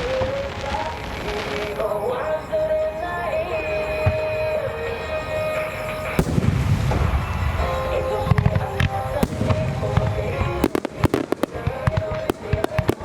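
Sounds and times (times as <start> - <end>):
sharp firework cracks: 0.0 - 2.0, 6.2 - 13.0
fireworks booming: 0.0 - 2.2, 6.0 - 13.0
music over loudspeakers: 0.0 - 13.0.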